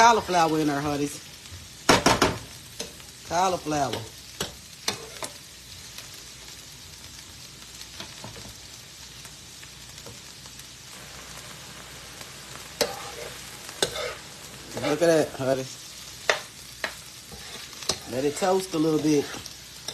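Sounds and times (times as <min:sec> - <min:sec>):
food sizzling in a hot pan: 0:00.0 - 0:19.9
utensil clicking and scraping pan: 0:03.9 - 0:05.4, 0:12.8 - 0:15.1, 0:16.2 - 0:19.9.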